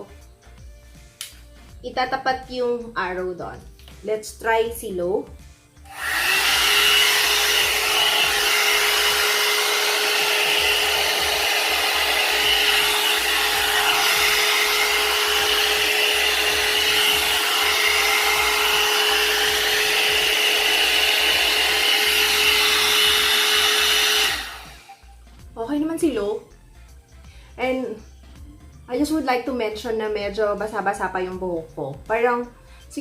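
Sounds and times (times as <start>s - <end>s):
hair dryer blowing: 5.8s - 25.4s.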